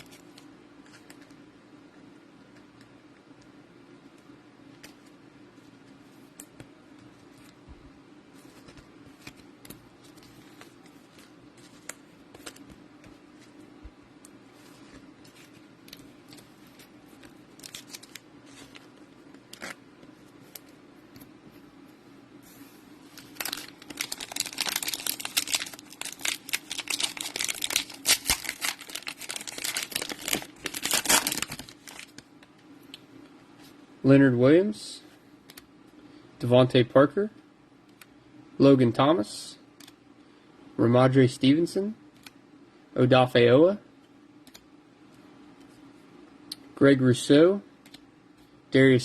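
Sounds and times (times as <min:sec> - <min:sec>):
foil wrapper crinkling and ripping: 0:17.5 - 0:18.8, 0:23.2 - 0:32.2.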